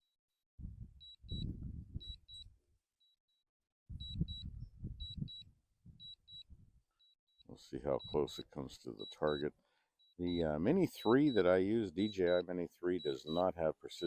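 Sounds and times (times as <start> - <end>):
wind buffeting on microphone: 0.6 - 2.2, 3.9 - 6.8
remote controller double beeps: 1.0 - 2.5, 4.0 - 7.2, 7.8 - 13.6.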